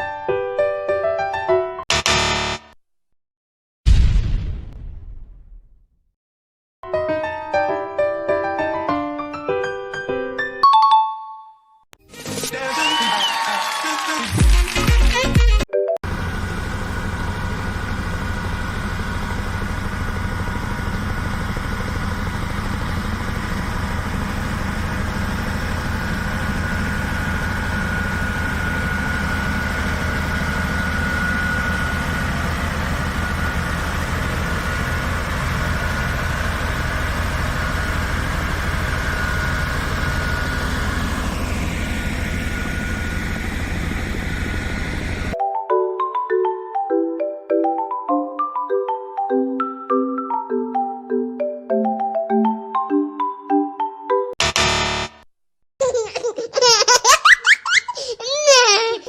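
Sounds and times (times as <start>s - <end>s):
high whine: 1.9s - 2.8s, 54.4s - 55.3s
heavy machine engine running: 16.0s - 45.4s.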